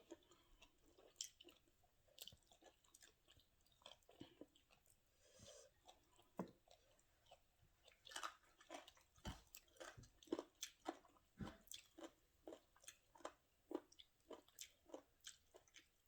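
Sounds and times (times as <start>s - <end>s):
person chewing crunchy food: 0.0s - 16.0s.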